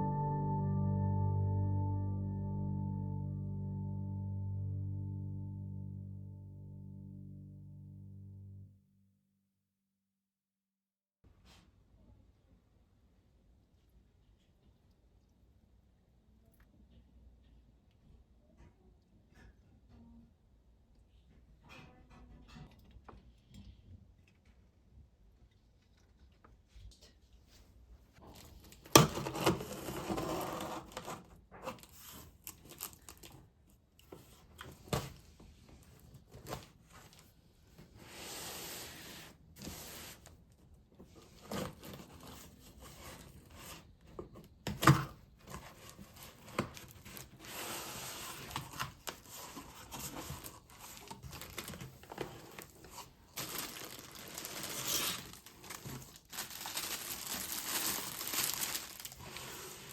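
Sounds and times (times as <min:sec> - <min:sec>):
packaging rustling and crinkling: 0:48.5 - 0:59.9.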